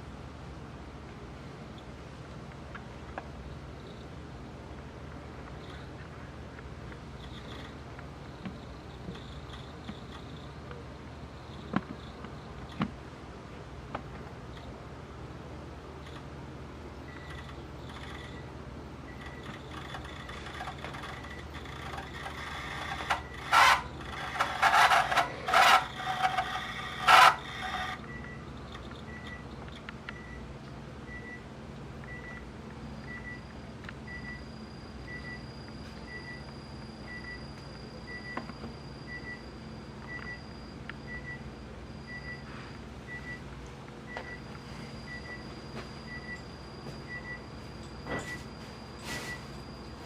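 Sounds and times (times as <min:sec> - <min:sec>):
cassette deck low hum: 0:00.0 - 0:50.0
harsh mechanical noises: 0:04.8 - 0:13.0, 0:17.0 - 0:30.5
faint short beep: 0:44.1 - 0:50.0.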